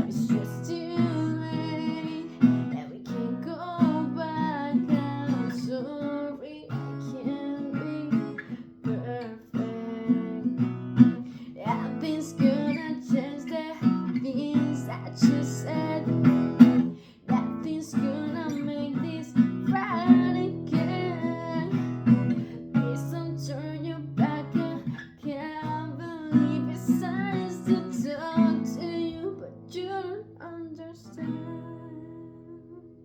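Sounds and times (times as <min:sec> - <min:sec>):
acoustic guitar strumming: 0:00.0 - 0:29.7
woman singing: 0:00.0 - 0:33.0.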